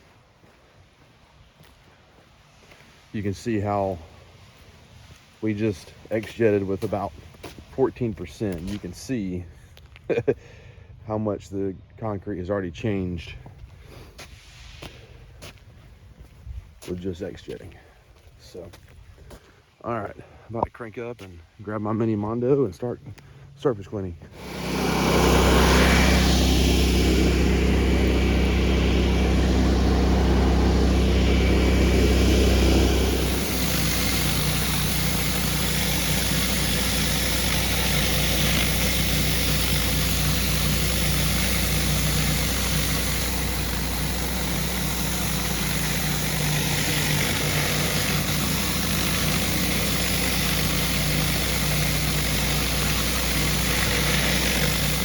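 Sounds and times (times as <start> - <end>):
high-pressure water hissing on concrete: 24.4 - 28.5, 31.0 - 55.0
pressure washer engine running: 24.4 - 55.0.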